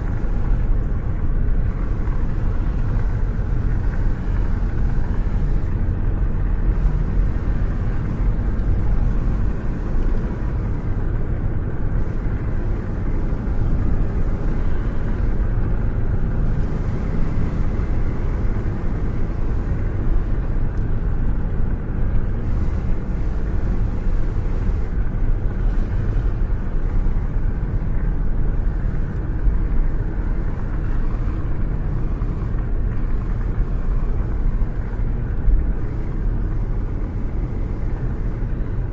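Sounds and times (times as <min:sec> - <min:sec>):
road and wind noise: 0:00.0 - 0:38.9.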